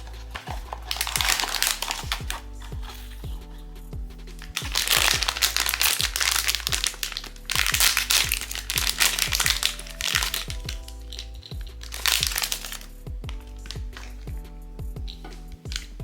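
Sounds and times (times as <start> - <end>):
packaging crinkling: 0.0 - 3.3, 4.4 - 12.9
music with deep bass beat: 0.0 - 16.0.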